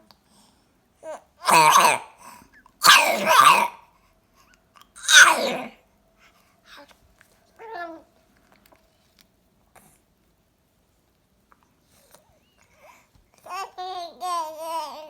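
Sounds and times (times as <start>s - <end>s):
cat coughing: 1.4s - 2.2s, 2.8s - 3.8s, 5.0s - 5.8s.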